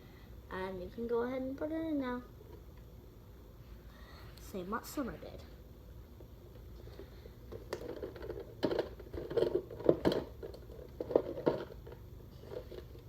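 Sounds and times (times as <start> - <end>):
plastic knocks and clicks: 7.5 - 12.0.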